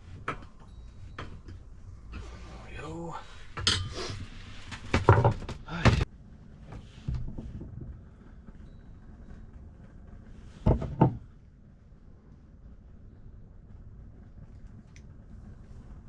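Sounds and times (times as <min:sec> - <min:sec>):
hard objects knocking and thudding: 0:04.7 - 0:06.1, 0:10.6 - 0:11.3.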